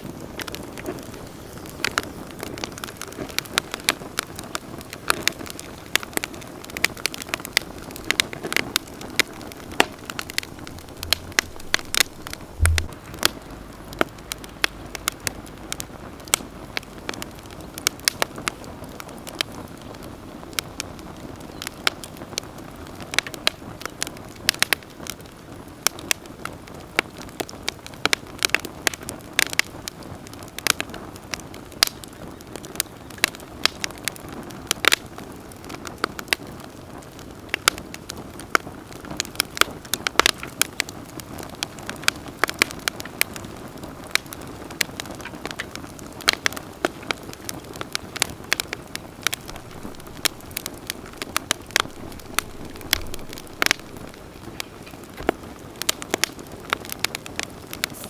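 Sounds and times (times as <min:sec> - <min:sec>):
campfire crackling and popping: 0:00.0 - 0:58.0
low thud: 0:09.2 - 0:15.5, 0:49.4 - 0:54.5.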